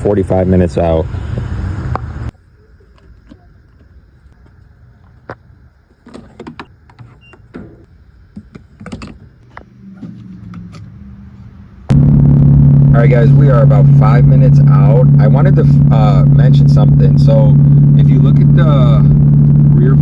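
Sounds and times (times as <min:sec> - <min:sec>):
car engine drone: 0:00.0 - 0:02.3, 0:09.4 - 0:20.0.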